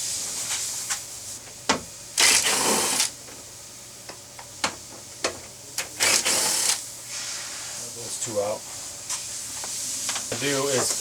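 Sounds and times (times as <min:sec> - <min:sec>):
power driver whirring: 0:02.2 - 0:03.2, 0:06.0 - 0:06.8.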